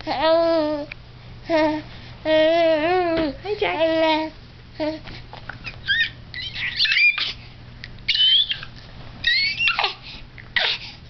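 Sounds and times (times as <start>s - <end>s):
infant squealing: 5.8s - 7.4s, 8.1s - 10.0s.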